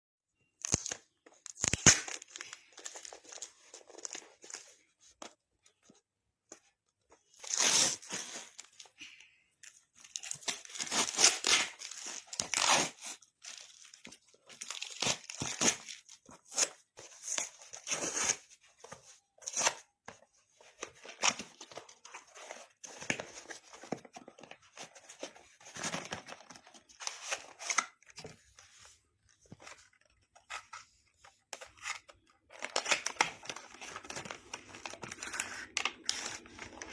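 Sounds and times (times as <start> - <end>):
packaging tearing and crinkling: 0.6 - 4.6, 7.4 - 8.8, 10.0 - 16.7.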